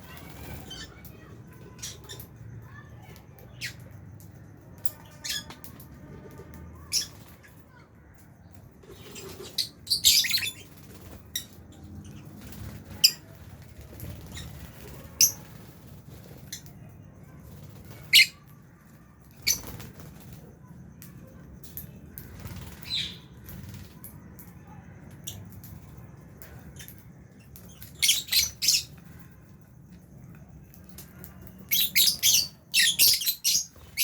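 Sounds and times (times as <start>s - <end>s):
birds chirping shrilly: 0.0s - 5.7s, 6.8s - 7.9s, 8.8s - 16.8s, 17.4s - 20.4s, 22.1s - 24.0s, 26.6s - 29.4s, 31.6s - 34.0s.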